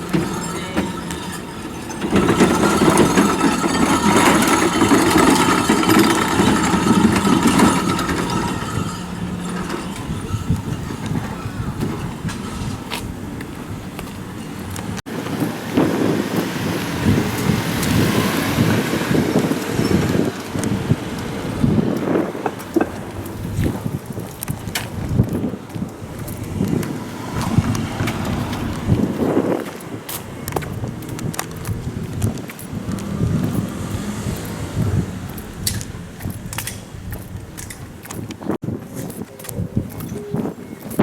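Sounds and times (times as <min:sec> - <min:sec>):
wind buffeting microphone: 0:00.0 - 0:41.0
vehicle passing by: 0:13.7 - 0:21.8, 0:26.4 - 0:36.4.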